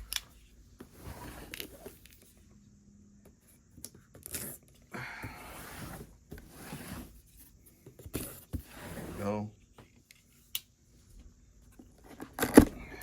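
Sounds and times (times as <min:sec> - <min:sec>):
cardboard scraping and rustling: 0:00.4 - 0:02.4, 0:05.2 - 0:10.4.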